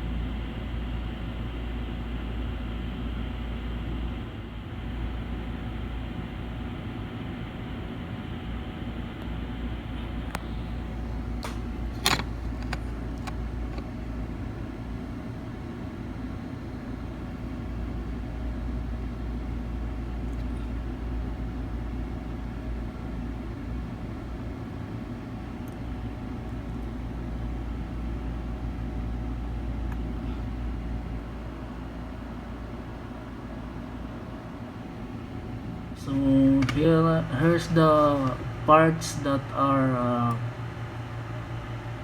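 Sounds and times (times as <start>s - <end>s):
low machine hum: 0.0s - 42.0s.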